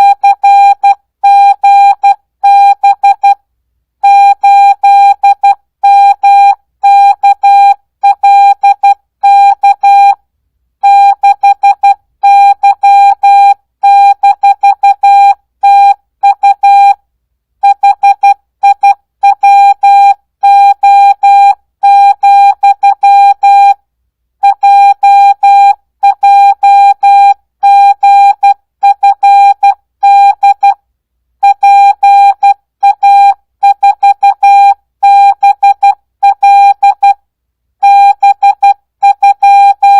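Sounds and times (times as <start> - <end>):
morse code beeps: 10.8 - 17.0, 17.6 - 23.8, 24.4 - 30.8, 31.4 - 37.2, 37.8 - 39.9.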